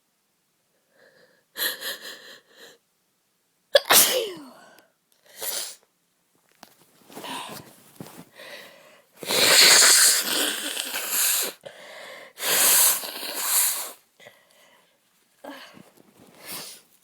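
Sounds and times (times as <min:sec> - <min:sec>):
woman sneezing: 0:03.8 - 0:04.7
quiet breaths: 0:07.0 - 0:09.3, 0:10.7 - 0:17.0.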